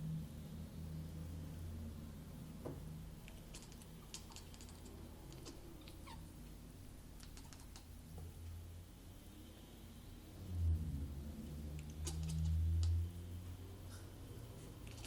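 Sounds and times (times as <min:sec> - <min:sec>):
kitten chattering clicks: 0:03.3 - 0:06.2, 0:07.2 - 0:07.9, 0:11.8 - 0:13.0
kitten chirps: 0:03.4 - 0:06.3, 0:07.2 - 0:07.9, 0:11.8 - 0:12.6.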